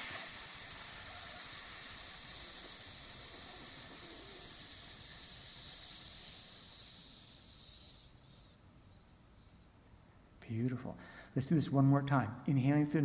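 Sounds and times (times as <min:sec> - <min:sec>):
hissing exhale through teeth: 0:00.0 - 0:08.7.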